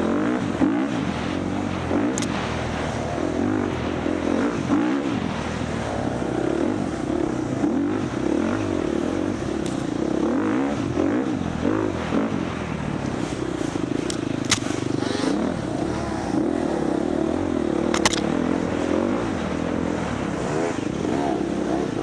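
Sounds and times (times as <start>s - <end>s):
dirt bike engine revving: 0.0s - 22.0s.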